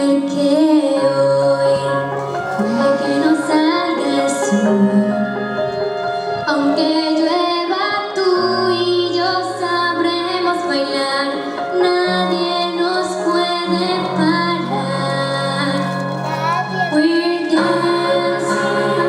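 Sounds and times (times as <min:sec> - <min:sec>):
young woman singing: 0:00.0 - 0:05.8, 0:06.4 - 0:19.0
instrumental accompaniment: 0:00.0 - 0:19.0.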